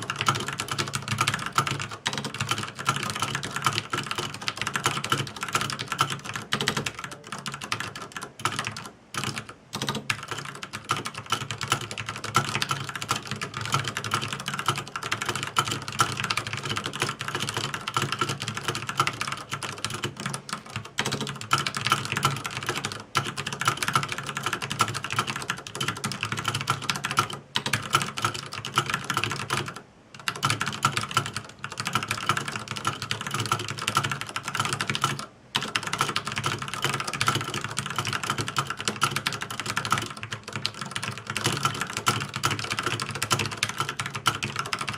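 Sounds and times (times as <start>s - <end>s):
fast typing on keyboard: 0.0s - 44.9s.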